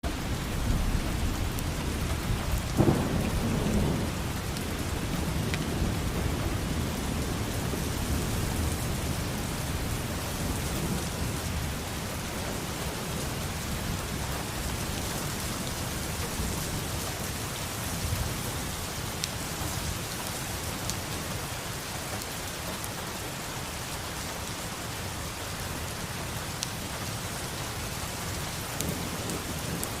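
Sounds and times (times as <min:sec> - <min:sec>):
steady rain falling: 0:00.0 - 0:30.0
low rumble of thunder: 0:00.1 - 0:21.4, 0:27.1 - 0:30.0.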